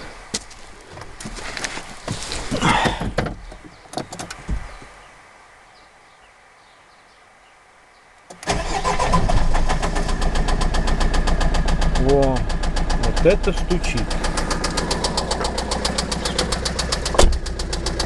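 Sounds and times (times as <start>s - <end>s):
clicks and clunks: 2.0s - 4.7s
van engine running with knock: 2.6s - 3.7s, 9.8s - 18.0s.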